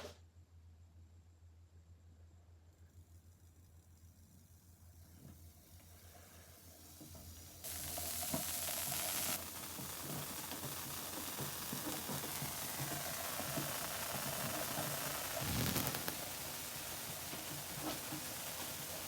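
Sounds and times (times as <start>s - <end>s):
crackling electrical discharge: 7.6s - 19.0s.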